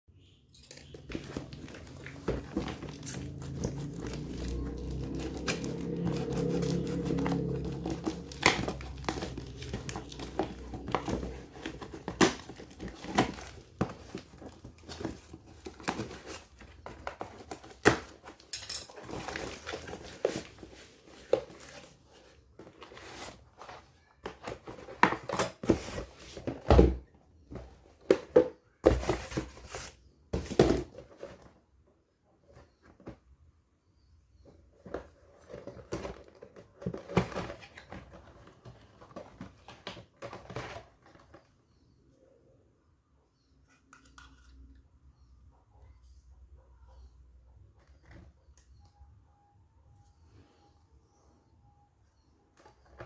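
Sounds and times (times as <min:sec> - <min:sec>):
packaging crinkling and rustling: 0:00.6 - 0:27.0, 0:34.8 - 0:41.8.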